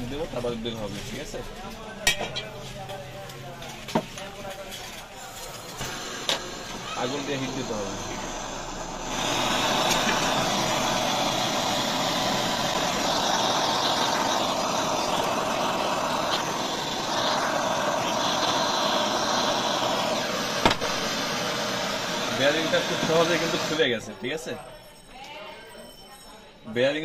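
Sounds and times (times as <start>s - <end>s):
gas torch flame hissing: 4.9s - 24.0s.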